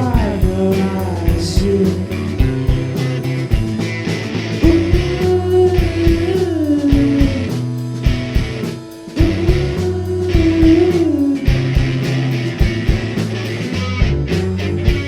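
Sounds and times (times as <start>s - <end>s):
bending guitar note: 0.0s - 15.0s
drums steady beat: 0.0s - 15.0s
rock band playing live: 0.0s - 15.0s.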